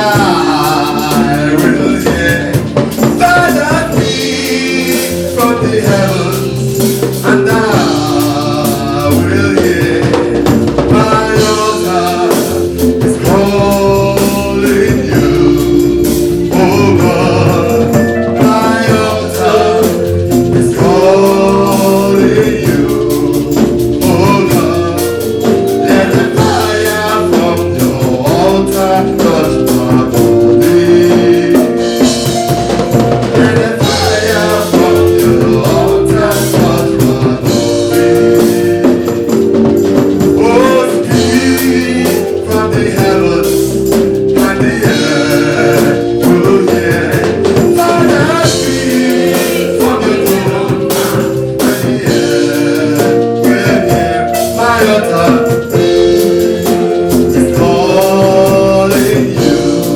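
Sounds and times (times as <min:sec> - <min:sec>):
band accompaniment with drums: 0:00.0 - 0:59.9
gospel singing: 0:00.0 - 0:59.9.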